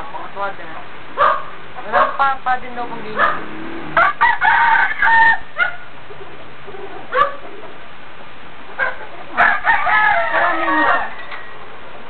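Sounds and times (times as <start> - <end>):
chicken calls: 2.9 - 7.9, 8.6 - 11.7
rooster crowing: 3.2 - 5.9, 8.8 - 11.6.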